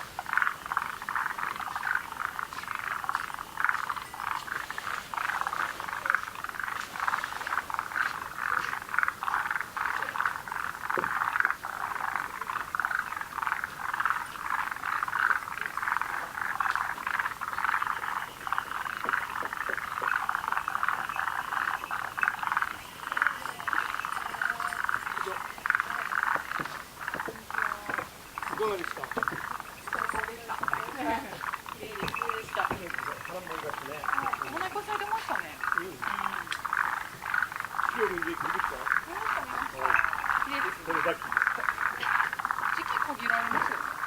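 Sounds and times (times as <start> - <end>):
frog chorus with rapid pulsed calls: 0.0 - 44.0.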